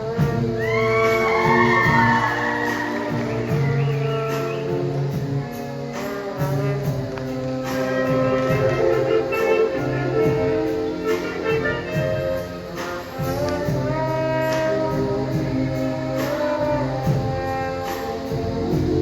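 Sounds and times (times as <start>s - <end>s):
brass section playing melody: 0.0s - 19.0s
drums: 0.0s - 19.0s.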